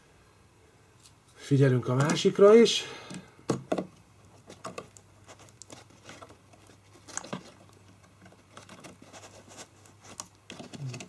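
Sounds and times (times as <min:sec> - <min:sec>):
plastic case crinkling and clicking: 0:02.0 - 0:02.3, 0:03.1 - 0:11.0.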